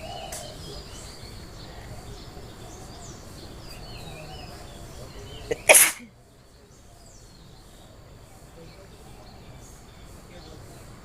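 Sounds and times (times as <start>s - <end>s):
birds chirping: 0.0s - 11.0s
outdoor background noise: 0.0s - 11.0s
person sneezing: 5.5s - 6.1s.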